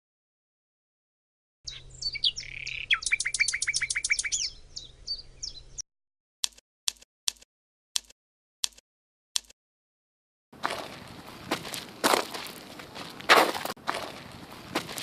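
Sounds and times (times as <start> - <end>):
sharp bird chips: 1.7 - 5.8
small bird trilling: 1.7 - 5.8.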